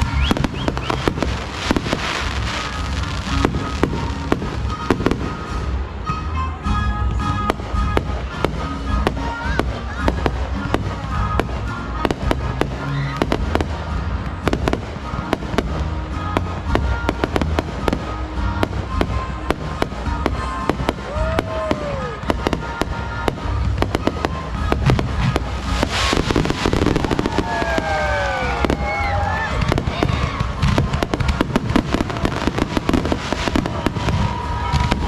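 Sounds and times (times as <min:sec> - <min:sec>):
firework whistles gliding in pitch: 0:00.0 - 0:05.8, 0:23.9 - 0:30.4
fireworks crackling and banging: 0:00.0 - 0:35.0
music: 0:00.0 - 0:35.0.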